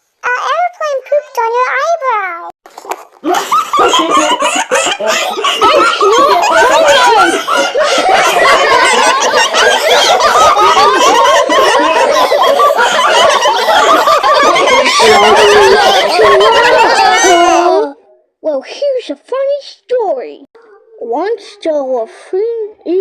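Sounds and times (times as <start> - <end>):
children laughing loudly: 3.2 - 18.0.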